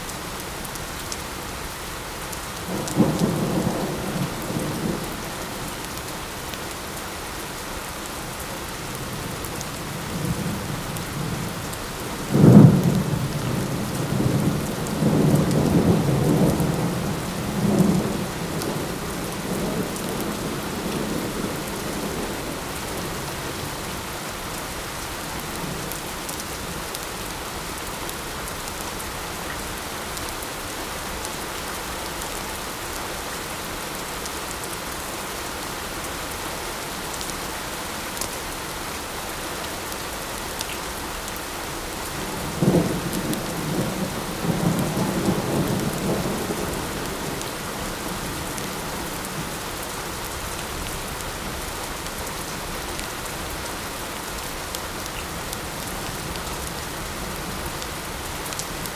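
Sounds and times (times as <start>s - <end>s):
light rain falling: 0.0s - 58.9s
thunder clap and rumble: 42.2s - 49.4s.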